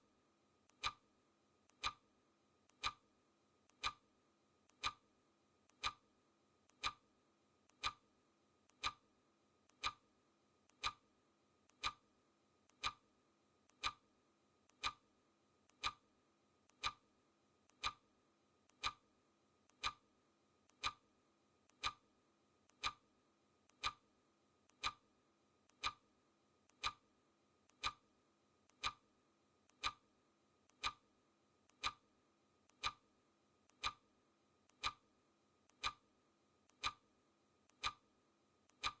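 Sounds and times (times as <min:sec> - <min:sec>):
clock ticking: 0:00.7 - 0:01.0, 0:01.7 - 0:02.0, 0:02.7 - 0:03.0, 0:03.7 - 0:04.0, 0:04.7 - 0:05.0, 0:05.7 - 0:06.0, 0:06.7 - 0:07.0, 0:07.7 - 0:08.0, 0:08.7 - 0:09.0, 0:09.7 - 0:10.0, 0:10.7 - 0:11.0, 0:11.7 - 0:12.0, 0:12.7 - 0:13.0, 0:13.7 - 0:14.0, 0:14.7 - 0:15.0, 0:15.7 - 0:16.0, 0:16.7 - 0:17.0, 0:17.7 - 0:18.0, 0:18.7 - 0:19.0, 0:19.7 - 0:20.0, 0:20.7 - 0:21.0, 0:21.7 - 0:22.0, 0:22.7 - 0:23.0, 0:23.7 - 0:24.0, 0:24.7 - 0:25.0, 0:25.7 - 0:26.0, 0:26.7 - 0:27.0, 0:27.7 - 0:28.0, 0:28.7 - 0:29.0, 0:29.7 - 0:30.0, 0:30.7 - 0:31.0, 0:31.7 - 0:32.0, 0:32.7 - 0:33.0, 0:33.7 - 0:34.0, 0:34.7 - 0:35.0, 0:35.7 - 0:36.0, 0:36.7 - 0:37.0, 0:37.7 - 0:38.0, 0:38.7 - 0:39.0.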